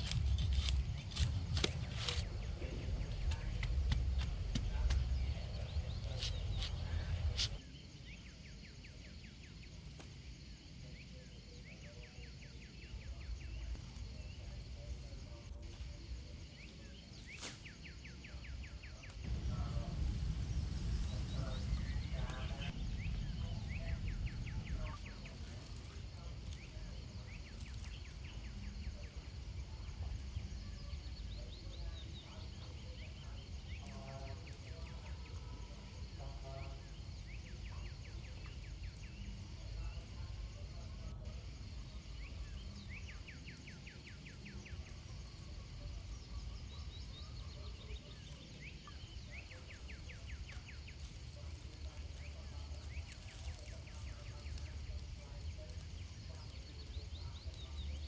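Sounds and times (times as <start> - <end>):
low rumble: 0.0 - 7.5, 19.3 - 25.4
steady high hiss: 0.0 - 11.5, 13.2 - 58.0
insects chirping in trills: 0.0 - 58.0.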